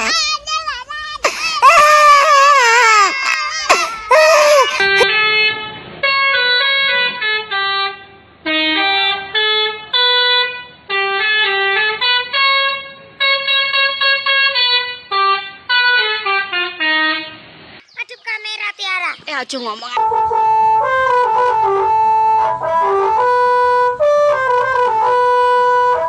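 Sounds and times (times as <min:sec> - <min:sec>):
multi-tone bus horn tune: 0:04.7 - 0:17.5, 0:20.0 - 0:26.0.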